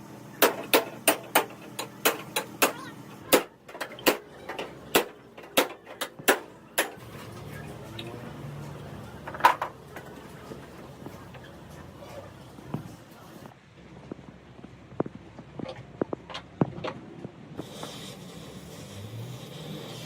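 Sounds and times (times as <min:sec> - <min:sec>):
sharp metallic knocks: 0:00.4 - 0:07.1.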